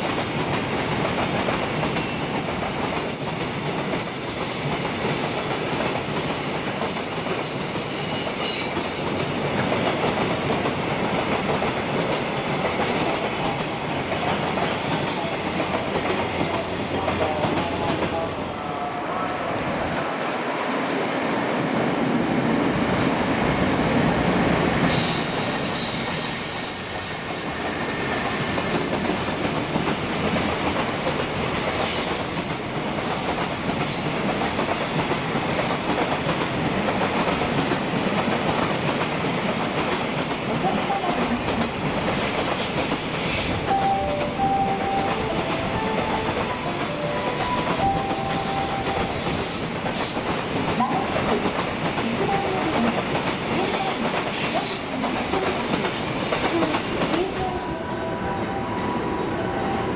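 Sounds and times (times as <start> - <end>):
train wheels clattering on track: 0.0 - 18.4, 24.2 - 57.6
high-pitched wheel squeal: 25.1 - 28.5.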